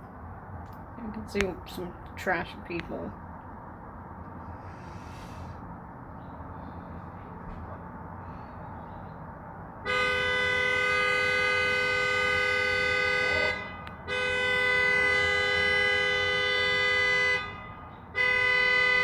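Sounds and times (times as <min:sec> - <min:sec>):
car horn blasts: 0:09.8 - 0:19.0.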